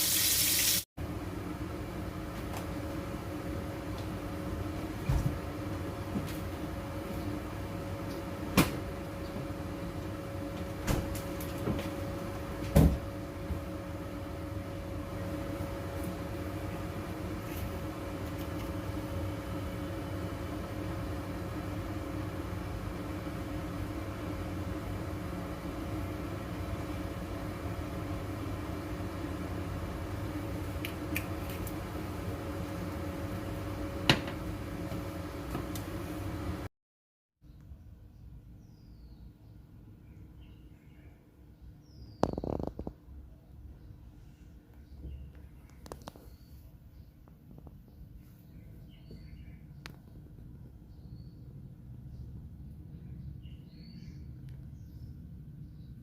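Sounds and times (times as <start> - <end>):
steady hum: 0.0 - 36.7.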